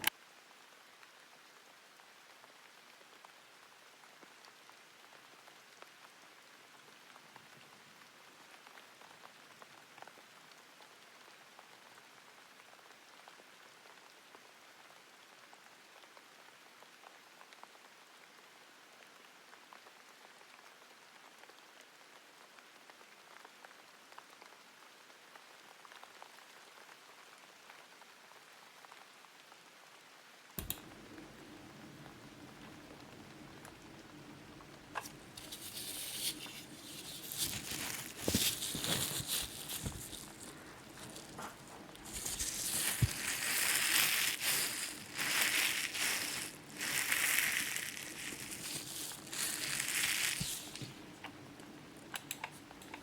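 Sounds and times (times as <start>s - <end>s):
faint steady hiss: 0.0s - 53.0s
tiny crackles: 30.6s - 53.0s.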